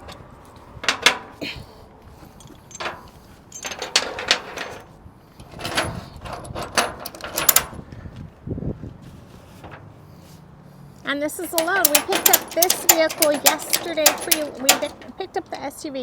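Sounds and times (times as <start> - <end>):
sharp knocks and clanks: 0.8 - 1.4, 11.4 - 15.2.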